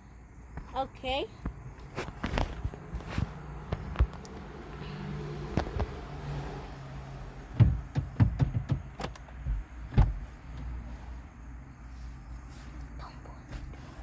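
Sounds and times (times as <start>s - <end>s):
knocks and clunks climbing into seat: 1.5s - 4.8s, 5.4s - 6.3s, 7.4s - 10.9s.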